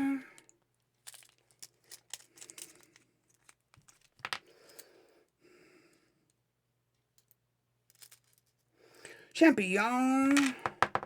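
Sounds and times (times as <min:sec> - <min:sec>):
soft rustling of handling: 0:00.4 - 0:05.0, 0:06.2 - 0:08.8.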